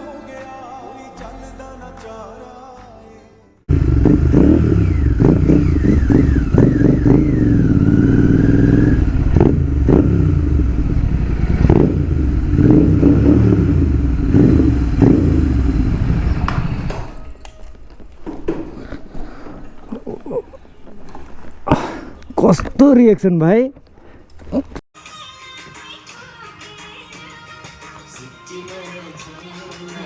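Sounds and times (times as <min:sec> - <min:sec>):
motorcycle engine revving loudly: 0:03.7 - 0:17.2.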